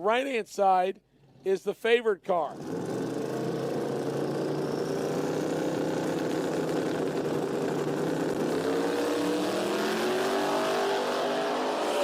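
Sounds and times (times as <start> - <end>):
drag car engines revving: 2.5 - 12.0.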